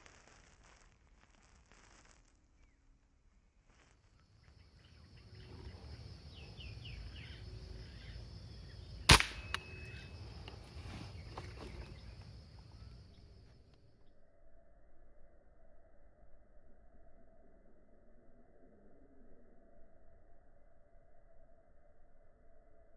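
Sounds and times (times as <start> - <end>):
steady high hiss: 0.0 - 13.7
air rifle shot: 9.0 - 9.9.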